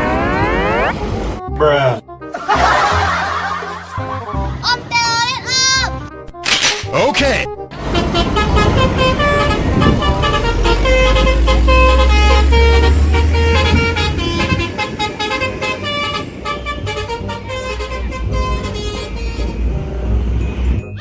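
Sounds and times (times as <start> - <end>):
bus engine rumble: 0.0 - 1.4, 7.8 - 21.0
multi-tone air horn melody: 7.8 - 20.8.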